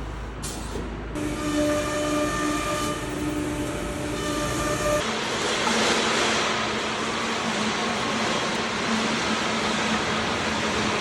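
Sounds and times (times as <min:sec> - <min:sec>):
low machine hum: 0:01.1 - 0:05.0
high motor whine: 0:01.2 - 0:05.0.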